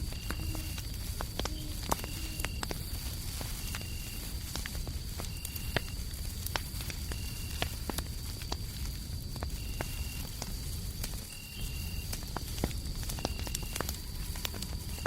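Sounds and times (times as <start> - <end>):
cricket high trill: 0.0 - 4.3
cricket short lower chirp: 0.0 - 4.4, 11.2 - 12.2, 13.0 - 15.0
fireplace crackling and popping: 0.0 - 15.0.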